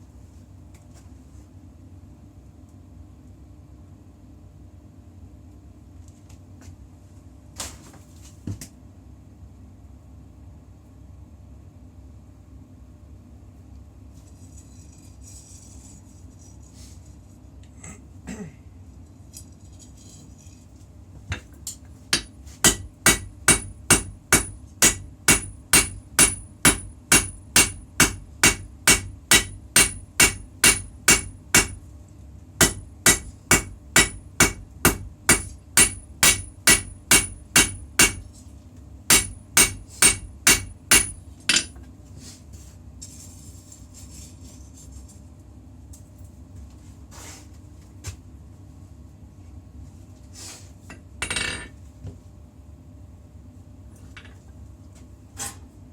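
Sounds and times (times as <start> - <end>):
hammer striking blade on anvil: 22.2 - 31.8, 32.6 - 38.3, 39.1 - 41.7.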